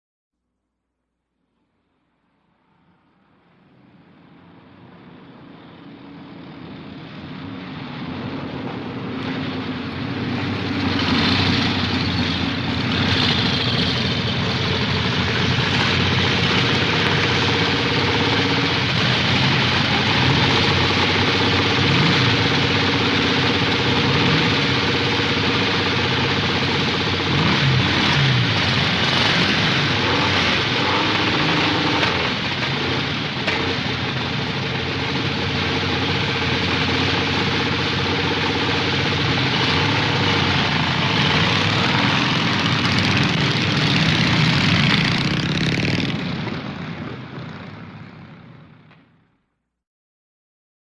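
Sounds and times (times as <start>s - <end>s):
motorcycle engine idling: 9.4s - 48.9s.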